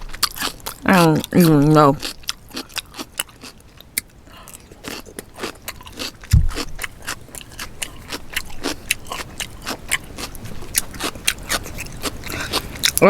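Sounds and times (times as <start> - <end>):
chewing: 0.0 - 13.0
dull thump: 6.3 - 6.8.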